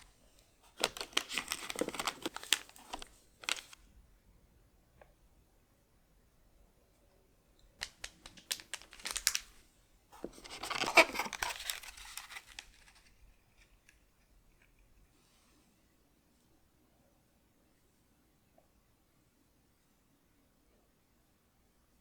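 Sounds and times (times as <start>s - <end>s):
packaging crinkling: 0.0s - 3.8s, 7.8s - 9.6s, 10.2s - 14.0s
packaging tearing: 0.8s - 3.8s, 7.8s - 9.6s, 10.2s - 13.2s.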